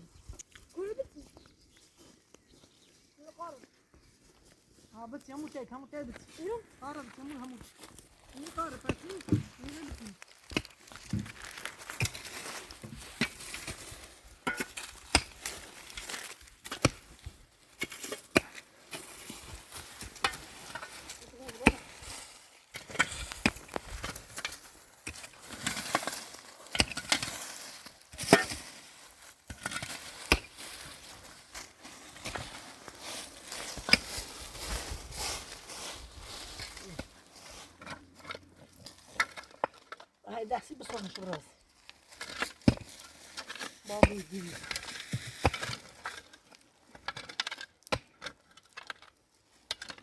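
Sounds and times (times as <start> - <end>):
rustling and crinkling: 0.0 - 50.0.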